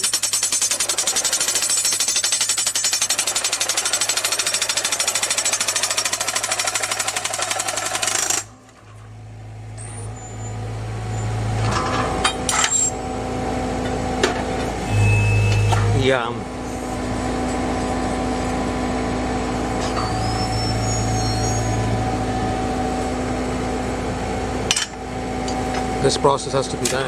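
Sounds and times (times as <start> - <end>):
percussion hammer pounding: 0.0 - 8.5
engine and hydraulics hum: 0.9 - 27.0.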